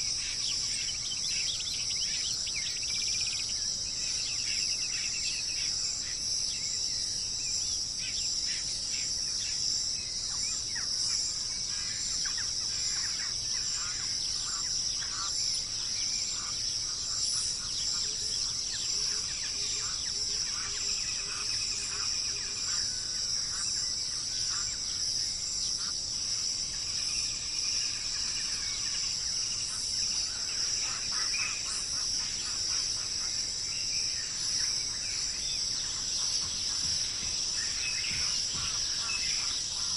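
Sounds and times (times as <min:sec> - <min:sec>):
high-pitched insect chorus: 0:00.0 - 0:39.9
birds chirping and whistling: 0:34.2 - 0:39.9.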